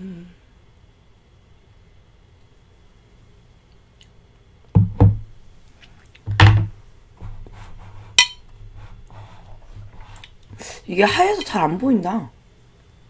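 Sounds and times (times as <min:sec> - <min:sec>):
tableware thudding on table: 0:04.8 - 0:05.2, 0:06.3 - 0:06.8.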